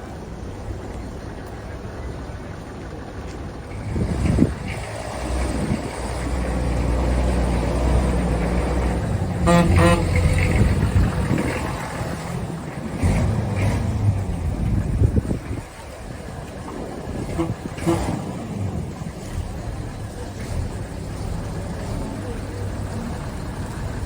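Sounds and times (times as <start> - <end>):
bus engine rumbling: 0.0 - 24.0
bus horn toot: 9.2 - 11.0, 17.2 - 18.6.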